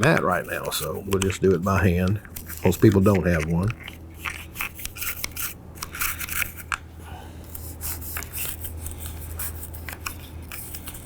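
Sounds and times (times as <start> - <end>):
brush scrubbing metal: 0.0 - 5.5.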